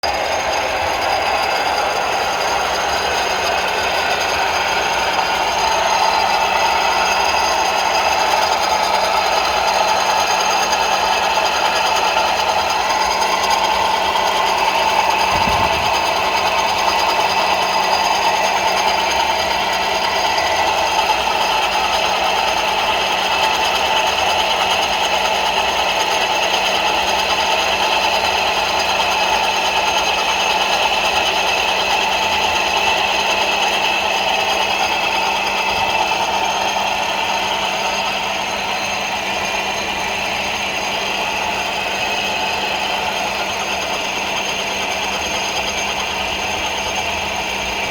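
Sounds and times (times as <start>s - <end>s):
car engine running: 0.0s - 26.0s
metallic rattle and ringing: 15.0s - 17.5s.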